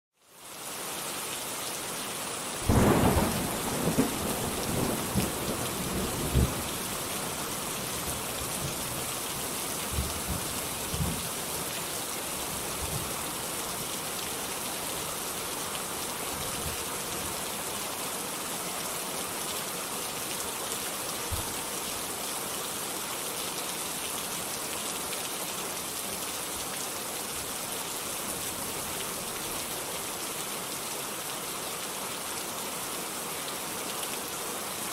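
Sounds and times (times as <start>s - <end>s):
heavy rain: 0.2s - 34.9s
thunder rumbling: 2.6s - 6.8s.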